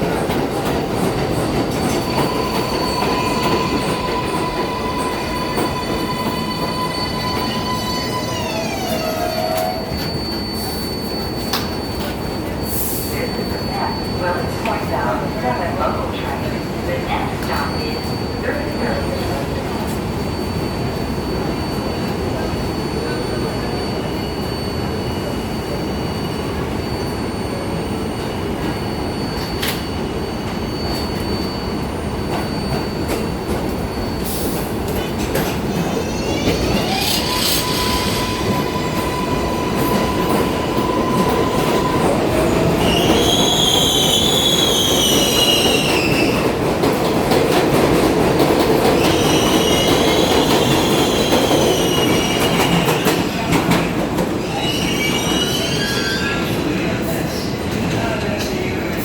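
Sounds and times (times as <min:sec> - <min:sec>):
train wheels rumbling on rail: 0:00.0 - 0:59.0
high wheel squeal: 0:01.8 - 0:46.6, 0:48.7 - 0:58.2.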